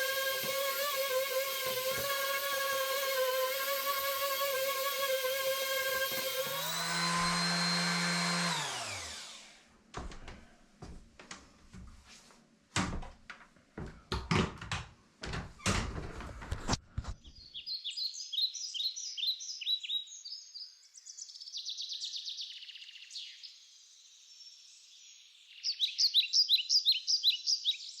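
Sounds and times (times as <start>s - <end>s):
birdsong chirps: 17.2s - 28.0s.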